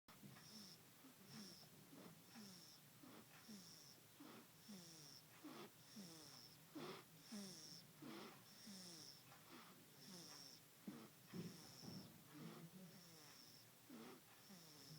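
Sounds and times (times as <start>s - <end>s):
baby snoring faintly: 0.1s - 14.9s.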